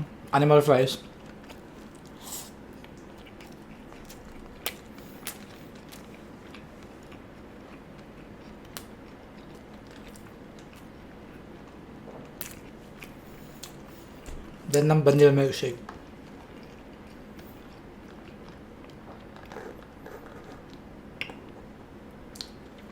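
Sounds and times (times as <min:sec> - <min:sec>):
steady low hum: 0:00.0 - 0:22.9
chewing food: 0:01.0 - 0:14.6, 0:15.8 - 0:22.9
mouth clicks and smacks: 0:18.2 - 0:21.7, 0:22.3 - 0:22.9.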